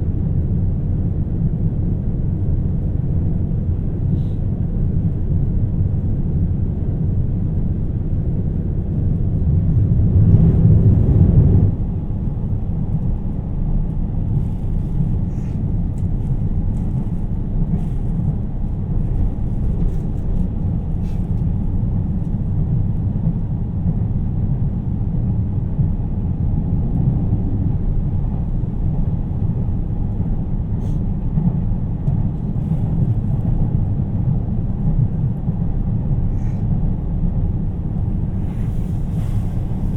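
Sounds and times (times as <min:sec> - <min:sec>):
train rumbling inside cabin: 0:00.0 - 0:39.9.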